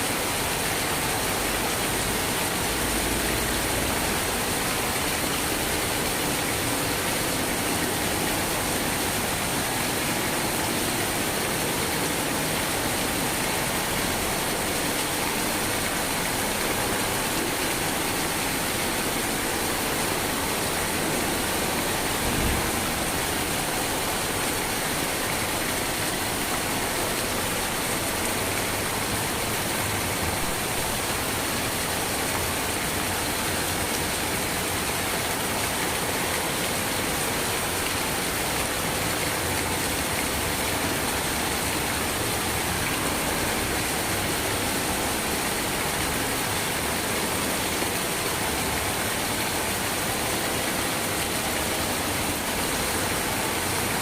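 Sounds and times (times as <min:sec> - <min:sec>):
steady rain falling: 0:00.0 - 0:54.0
low thump: 0:22.2 - 0:22.9.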